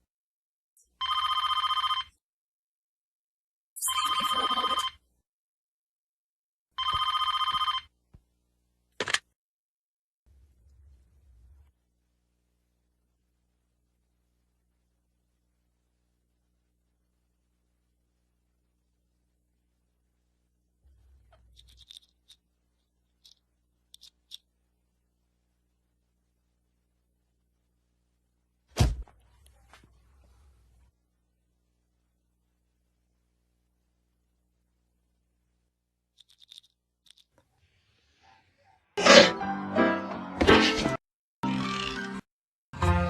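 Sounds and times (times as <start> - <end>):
telephone bell ringing: 1.0 - 2.1, 3.8 - 5.0, 6.8 - 7.9
small dry clicks and scratches: 21.3 - 24.5, 36.2 - 37.5.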